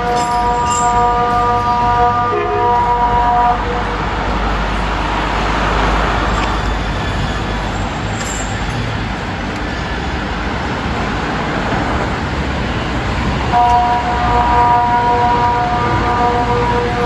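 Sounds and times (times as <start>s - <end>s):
low siren tone: 0.0s - 4.4s.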